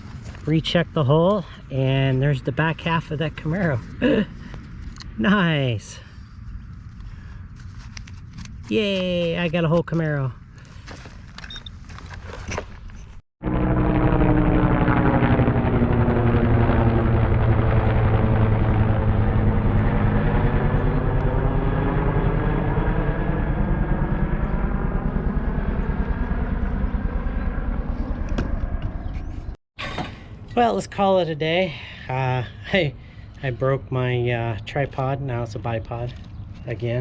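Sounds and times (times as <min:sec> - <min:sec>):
loud engine drone: 0:13.4 - 0:29.6.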